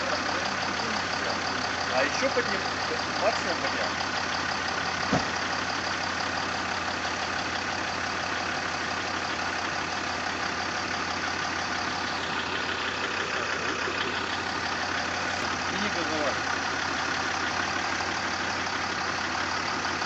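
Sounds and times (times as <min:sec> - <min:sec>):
car engine idling: 0:00.0 - 0:20.0
short sharp knock: 0:05.1 - 0:05.3.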